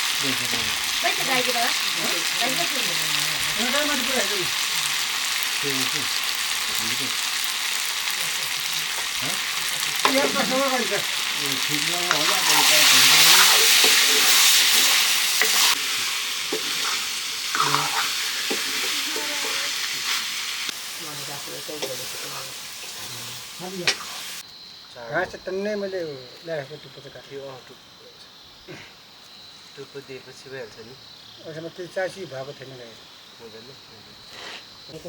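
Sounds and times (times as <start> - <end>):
food sizzling in hot oil: 0.0 - 24.5.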